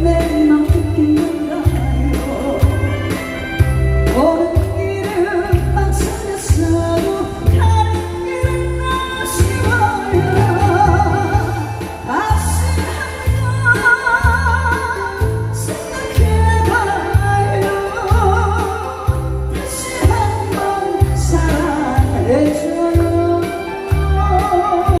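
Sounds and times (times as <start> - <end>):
woman singing: 0.0 - 25.0
steady bass beat: 9.5 - 13.5.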